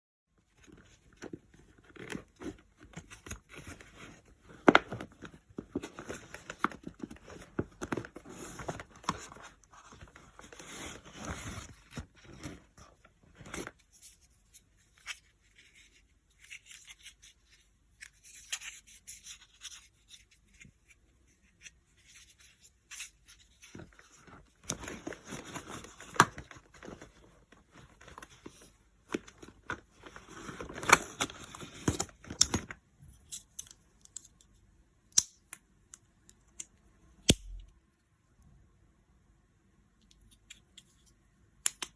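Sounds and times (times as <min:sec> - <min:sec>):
handling scrapes and rustles: 0:00.4 - 0:32.4.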